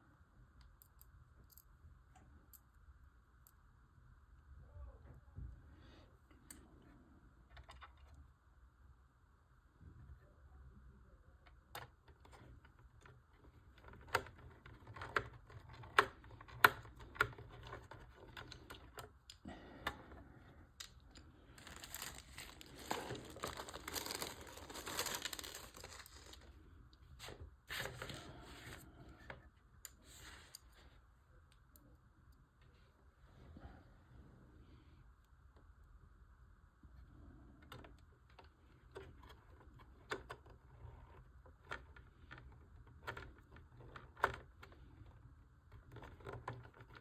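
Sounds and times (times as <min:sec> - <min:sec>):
small plastic parts clicking: 0:11.5 - 0:26.4
plastic packaging crinkling and tearing: 0:21.6 - 0:26.6.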